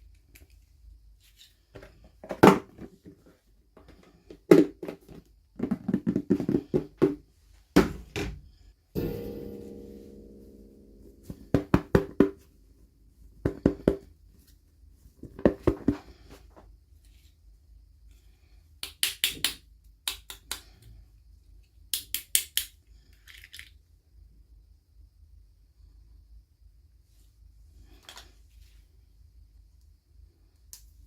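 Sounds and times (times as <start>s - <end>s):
clicks of plastic toy pieces: 22.0s - 23.8s.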